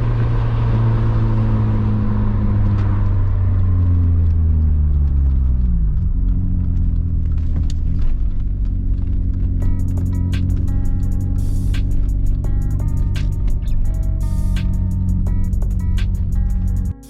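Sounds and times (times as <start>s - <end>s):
car engine while driving: 0.0s - 17.0s.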